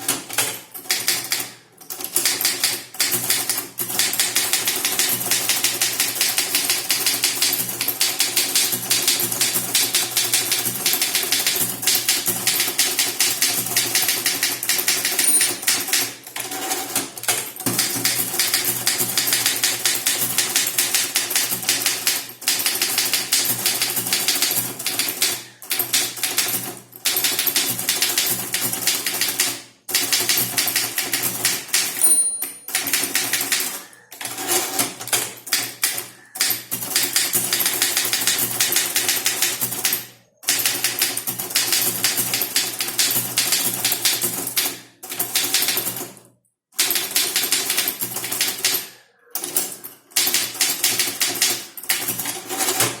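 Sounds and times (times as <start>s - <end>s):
typewriter key strikes: 2.1s - 16.1s
typewriter bell ring: 7.1s - 16.9s, 31.8s - 34.8s.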